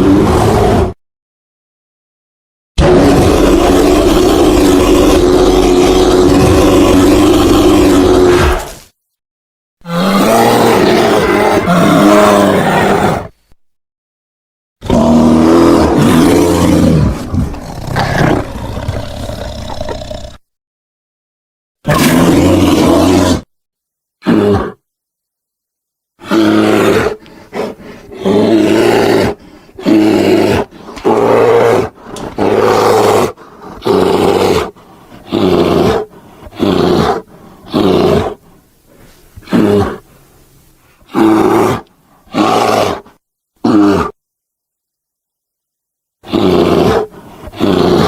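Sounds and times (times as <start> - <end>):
polar bear roaring and growling: 0.0 - 1.0, 2.8 - 8.8, 9.8 - 13.4, 14.8 - 20.4, 21.8 - 23.5, 24.2 - 24.8, 26.2 - 38.5, 39.4 - 40.1, 41.0 - 44.2, 46.2 - 48.0.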